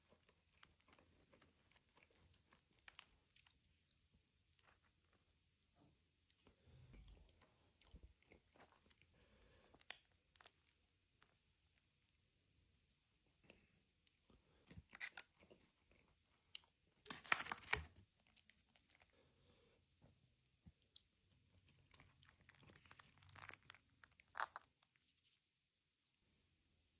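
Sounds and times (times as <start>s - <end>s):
crisps crunching: 21.8s - 25.2s.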